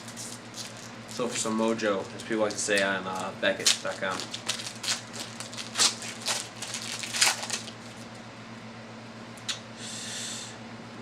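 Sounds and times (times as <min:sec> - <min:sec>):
wrapper crinkling rips: 0:00.0 - 0:08.2
steady low hum: 0:00.0 - 0:11.0
rustle of cards: 0:02.4 - 0:08.1.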